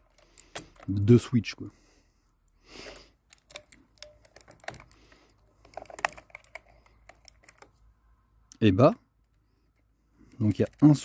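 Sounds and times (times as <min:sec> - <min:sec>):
plastic keyboard clicks and rattles: 0:03.3 - 0:07.8.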